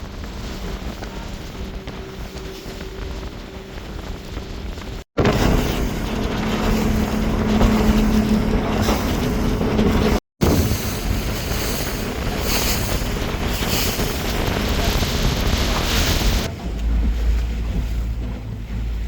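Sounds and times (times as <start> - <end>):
boat engine hum: 0.0 - 19.0
rushing water: 0.0 - 19.0
wind buffeting microphone: 0.0 - 19.0
water spray splashes: 10.4 - 16.5.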